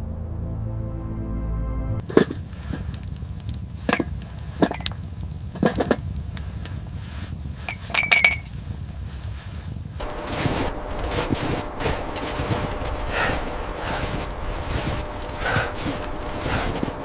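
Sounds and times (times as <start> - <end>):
background music: 0.0 - 2.0
hard objects clinking and knocking: 3.9 - 5.0, 7.7 - 8.5.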